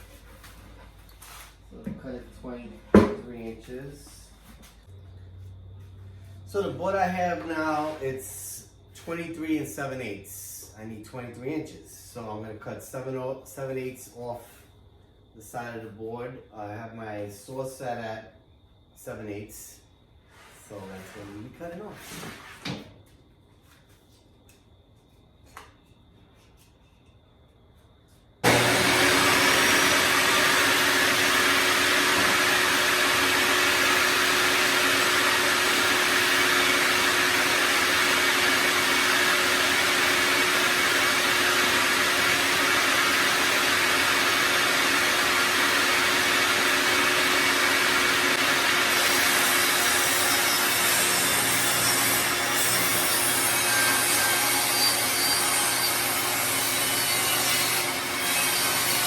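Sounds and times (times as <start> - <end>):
power saw cutting board: 2.9 - 3.3, 28.4 - 59.0.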